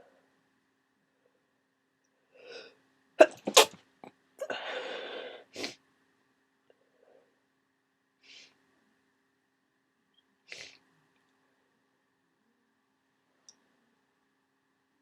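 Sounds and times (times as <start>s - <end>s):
person sneezing: 3.2s - 3.8s.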